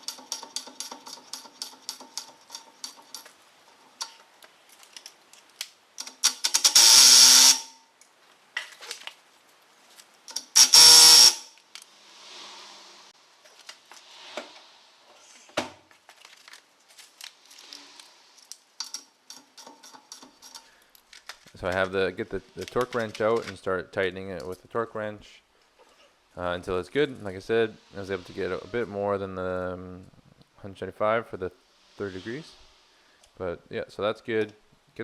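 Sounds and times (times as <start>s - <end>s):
socket wrench ratcheting: 0.0s - 3.3s
loud harsh bursts: 6.7s - 7.8s, 10.6s - 11.5s.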